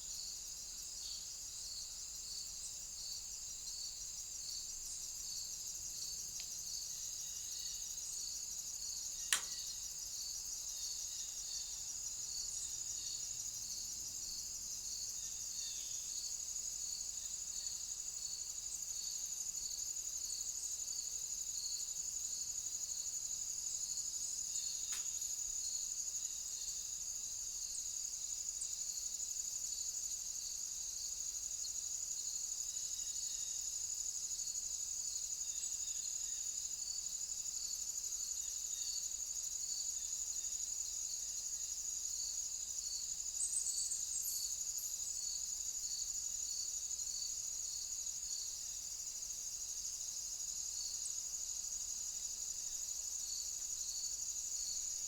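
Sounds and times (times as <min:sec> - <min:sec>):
crickets chirping: 0:00.0 - 0:55.0
sharp click: 0:09.3 - 0:09.6, 0:24.9 - 0:25.1.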